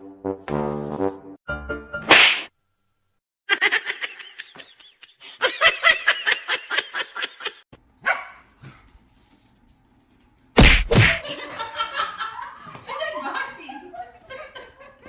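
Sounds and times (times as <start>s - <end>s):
voices laughing: 3.5s - 7.6s, 11.2s - 15.0s
small dog barking: 8.0s - 8.4s
loud sudden thud: 10.6s - 11.2s.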